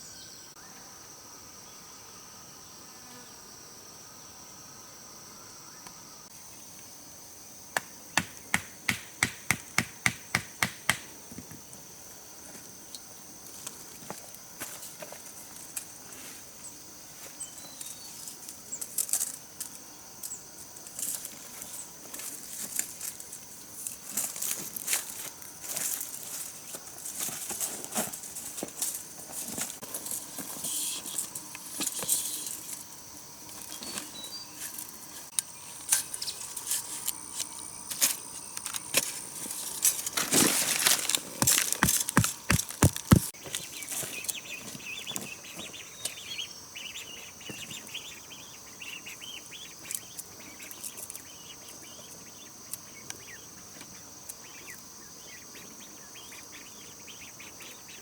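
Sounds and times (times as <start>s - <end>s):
sharp loud knocks: 7.8s - 11.1s.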